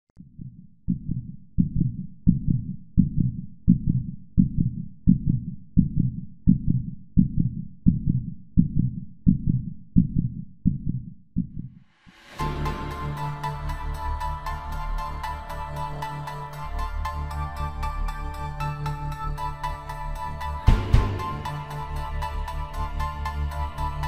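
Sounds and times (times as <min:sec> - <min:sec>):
heartbeat-like low thuds: 0:00.2 - 0:11.8, 0:20.7 - 0:21.6
electronic music: 0:12.2 - 0:24.0.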